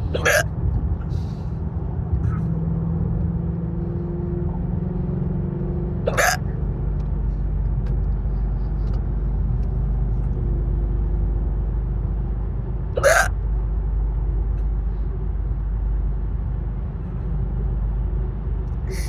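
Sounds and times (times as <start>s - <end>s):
woman hiccuping: 0.0s - 0.4s, 6.1s - 6.4s, 13.0s - 13.3s
car driving rumble: 0.0s - 19.0s.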